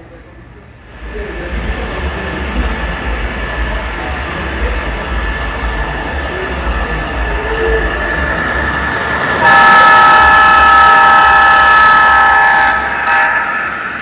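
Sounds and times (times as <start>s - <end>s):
model locomotive engine sound: 0.0s - 14.0s
model train diesel horn: 5.8s - 14.0s.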